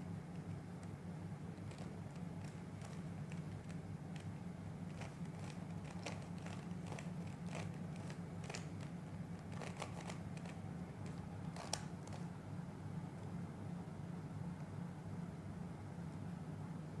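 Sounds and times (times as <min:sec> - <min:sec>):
puzzle cube clicking: 0:04.9 - 0:10.6.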